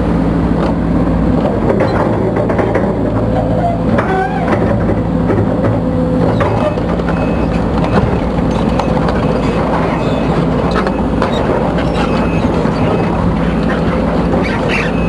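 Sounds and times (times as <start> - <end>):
excavator running: 0.0 - 15.0.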